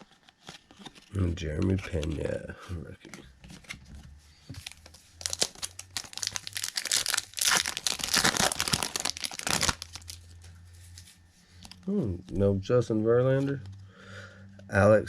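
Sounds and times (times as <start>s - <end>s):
plastic wrapper crinkling and tearing: 0.0s - 2.4s, 4.5s - 11.9s.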